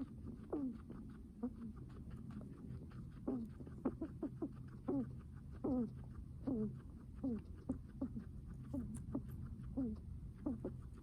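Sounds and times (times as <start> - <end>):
guinea pig squeaky breathing: 0.0 - 11.0.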